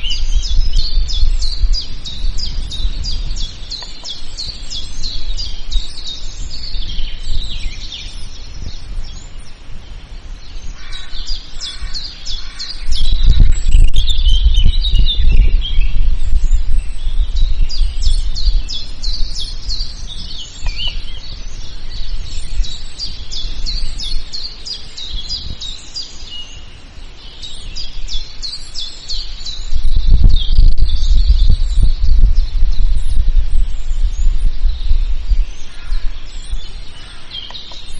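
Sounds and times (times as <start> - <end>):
songbirds chirping and trilling: 0.0 - 37.9
low rumble: 12.9 - 24.0, 29.7 - 37.0.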